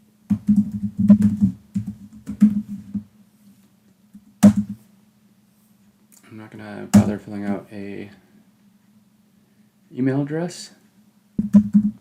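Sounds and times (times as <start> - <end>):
faint steady hum: 0.0 - 12.0
keyboard typing: 11.4 - 12.0.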